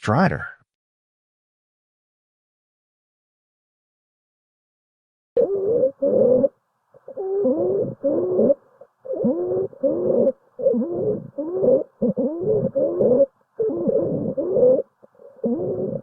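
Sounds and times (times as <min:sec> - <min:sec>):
pitched cooing breath sounds: 0:05.4 - 0:16.0.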